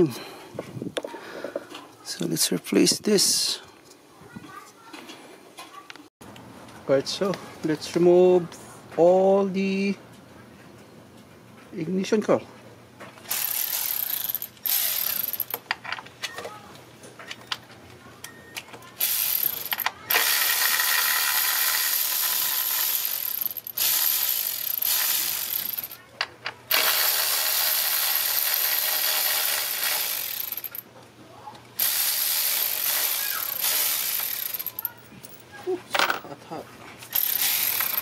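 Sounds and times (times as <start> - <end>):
ratchet wrench clicking: 13.3 - 15.6, 19.0 - 26.0, 26.7 - 30.8, 31.8 - 35.0, 37.1 - 38.0.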